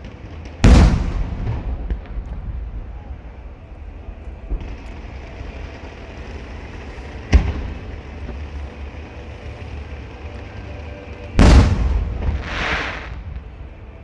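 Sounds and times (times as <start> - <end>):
firework explosions: 0.0 - 14.0
firework hissing rush: 11.6 - 13.4.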